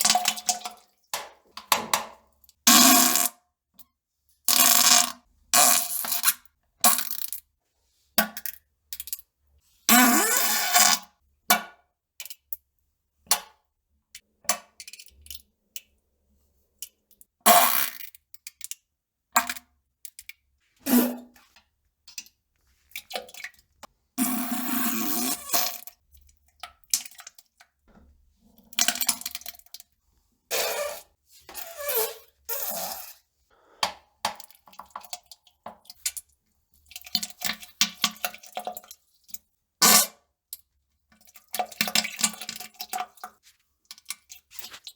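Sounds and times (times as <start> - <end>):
toilet plops: 0.0 - 2.3.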